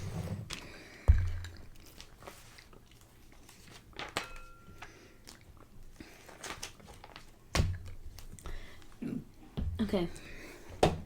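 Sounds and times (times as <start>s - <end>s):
plastic pieces clicking and rustling: 6.3s - 8.4s.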